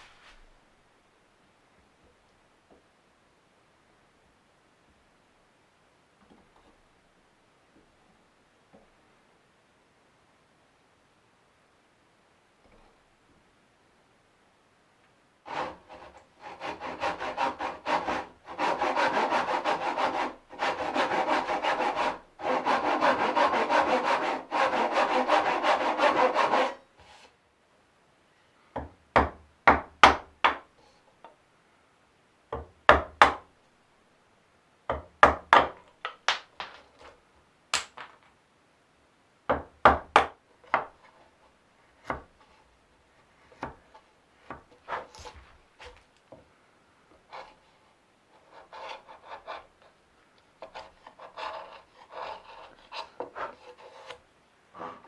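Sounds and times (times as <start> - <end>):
hand saw cutting wood: 15.5 - 26.8, 48.4 - 49.7, 50.6 - 54.2.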